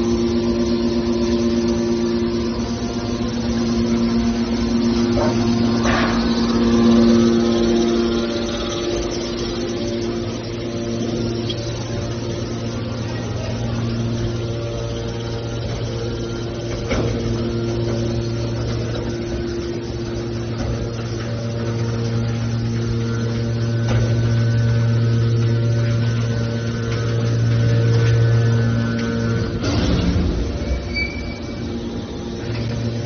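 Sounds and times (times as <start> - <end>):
machine hum: 0.0 - 33.0
machine knocks: 5.1 - 7.2, 15.8 - 19.7, 29.5 - 31.6.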